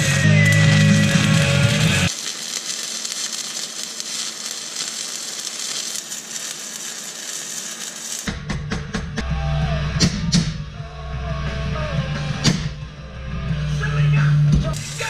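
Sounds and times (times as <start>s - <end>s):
background music: 0.0s - 2.1s, 8.3s - 15.0s
steady hissing noise: 0.0s - 8.3s.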